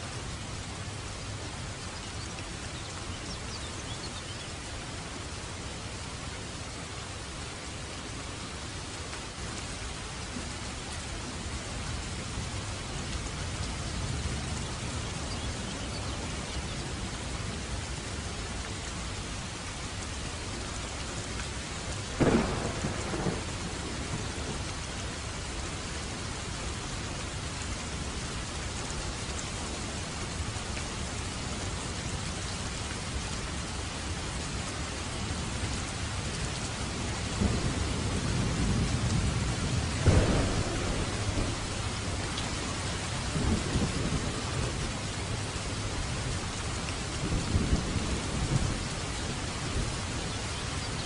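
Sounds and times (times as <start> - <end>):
steady rain: 0.0 - 51.0
low rumble of thunder: 22.1 - 26.3, 37.0 - 51.0
thunderclap: 22.2 - 24.1, 40.0 - 41.7.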